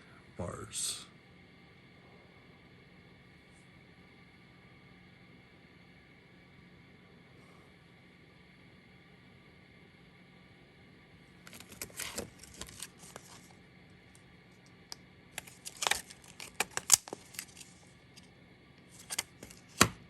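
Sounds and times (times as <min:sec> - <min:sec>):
plastic packaging rustling: 0:11.5 - 0:13.5, 0:15.4 - 0:17.9, 0:18.9 - 0:20.0.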